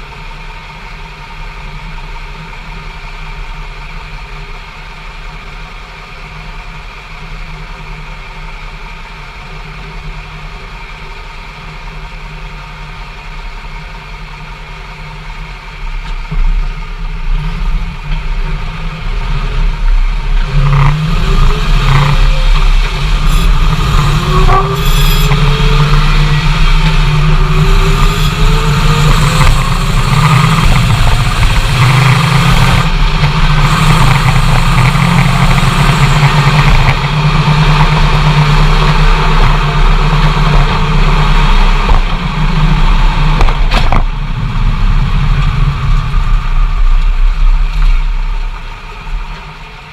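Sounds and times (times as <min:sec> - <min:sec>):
drivetrain rattling grind: 0:15.2 - 0:49.9
truck engine accelerating: 0:15.2 - 0:49.9.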